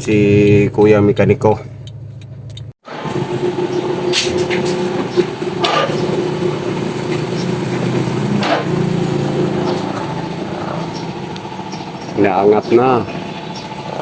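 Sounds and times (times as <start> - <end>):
electric pump motor running: 2.8 - 14.0
sharp metallic clanks: 4.1 - 6.2.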